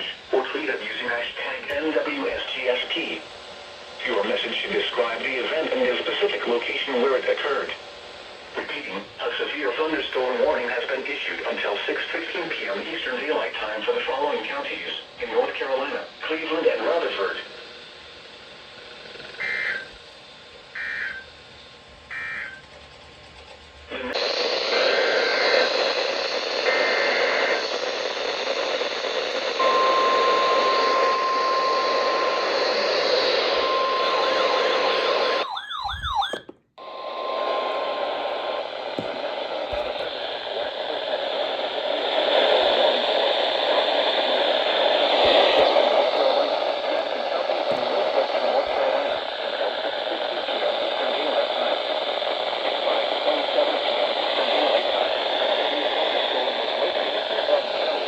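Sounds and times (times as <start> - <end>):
radio reception hiss: 0.0 - 36.2, 36.8 - 58.0
data bursts: 29.6 - 41.0.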